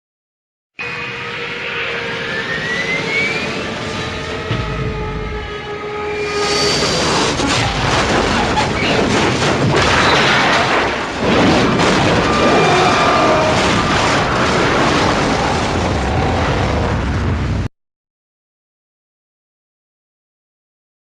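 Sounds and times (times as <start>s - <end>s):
jet engine whine: 0.8s - 8.9s, 12.2s - 17.7s
crashing explosion rumble: 6.4s - 17.7s.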